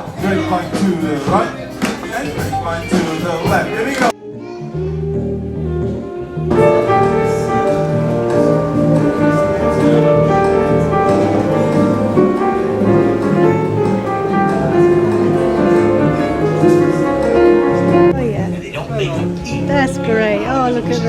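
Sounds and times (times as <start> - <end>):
dance music: 0.0 - 4.2, 6.5 - 18.6.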